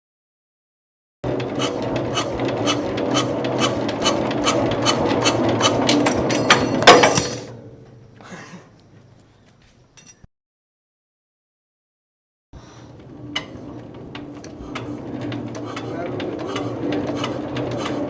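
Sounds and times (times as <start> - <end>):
diesel engine cranking: 1.2 - 7.6, 12.9 - 18.0
loud clunk: 1.3 - 8.0.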